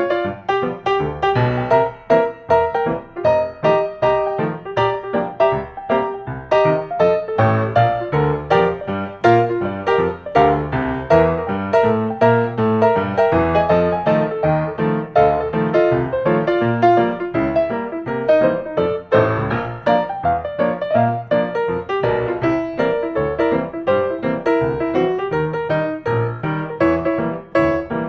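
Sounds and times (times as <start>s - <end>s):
piano music: 0.0s - 28.0s.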